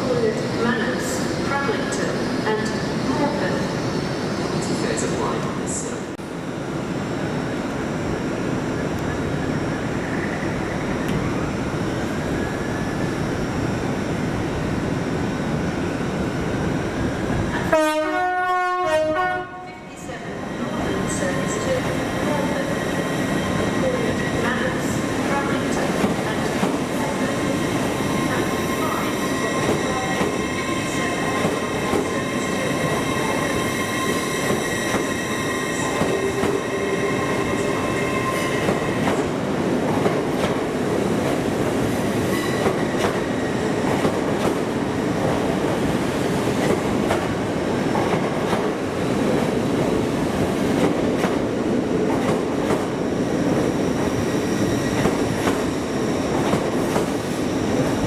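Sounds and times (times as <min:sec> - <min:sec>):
train rumble: 0:00.0 - 0:58.0
train wheels squealing: 0:20.6 - 0:25.0, 0:27.0 - 0:39.1, 0:42.1 - 0:43.9, 0:53.1 - 0:56.6.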